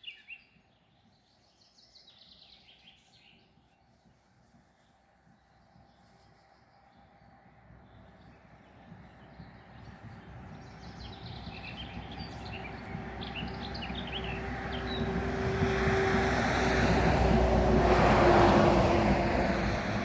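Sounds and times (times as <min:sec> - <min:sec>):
small birds chirping: 0:00.0 - 0:15.2.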